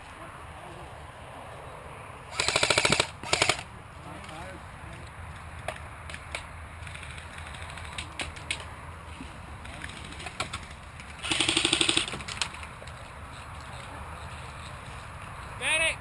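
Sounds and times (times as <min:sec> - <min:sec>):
airsoft gunfire: 0:02.3 - 0:03.6, 0:11.2 - 0:12.2.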